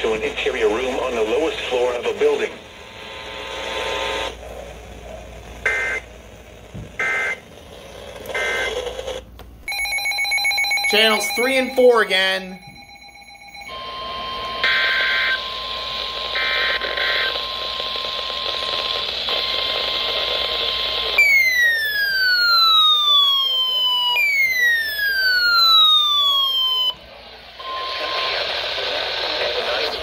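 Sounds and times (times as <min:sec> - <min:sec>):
radio static with steady tone: 0:00.0 - 0:07.5, 0:13.8 - 0:21.2, 0:26.1 - 0:30.0.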